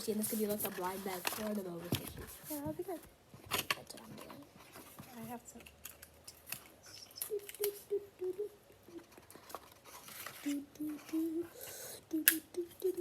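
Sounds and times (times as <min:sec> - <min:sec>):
paper rustling and clicks: 0:00.5 - 0:02.4
girl humming a tune: 0:07.2 - 0:09.2, 0:10.4 - 0:13.0.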